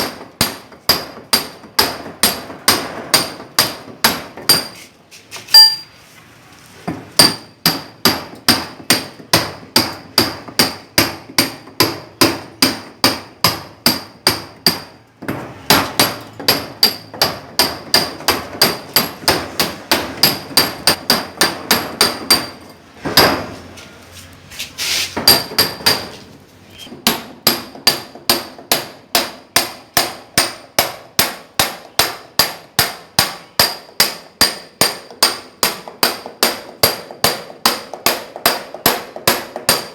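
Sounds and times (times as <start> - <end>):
hammer striking steel chisel: 0.0 - 4.9, 5.5 - 5.9, 7.2 - 23.5, 25.2 - 26.2, 26.8 - 39.9.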